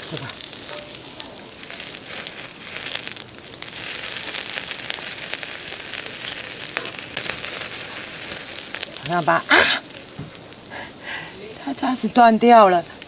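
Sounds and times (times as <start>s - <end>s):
charcoal crackling pops: 0.0s - 13.0s
meat sizzling on a grill: 0.0s - 13.0s.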